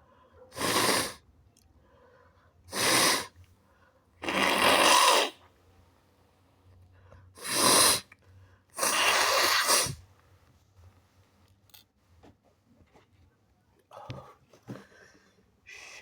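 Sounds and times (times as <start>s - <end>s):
person sneezing: 0.5s - 1.2s, 2.7s - 3.3s, 8.8s - 10.0s.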